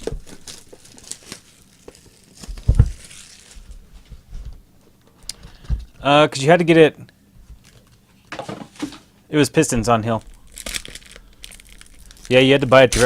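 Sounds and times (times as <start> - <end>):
plastic wrap crinkling and tearing: 0.0 - 3.8, 10.0 - 13.0.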